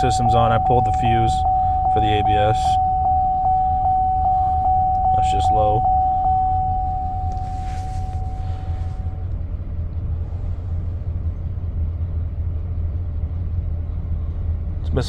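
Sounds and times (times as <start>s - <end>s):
dash warning chime: 0.0s - 9.2s
engine idling with misfire: 7.0s - 15.0s.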